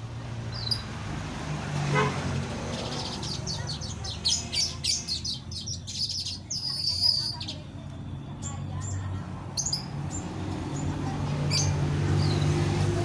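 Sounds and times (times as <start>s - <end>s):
bird chirping: 0.5s - 0.9s, 2.6s - 7.6s.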